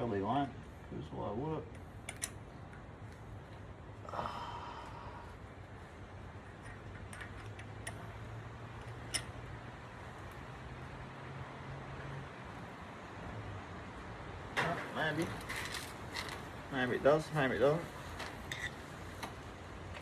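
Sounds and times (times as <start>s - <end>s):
low steady hum: 0.0s - 20.0s
metal parts clicking: 18.1s - 18.8s.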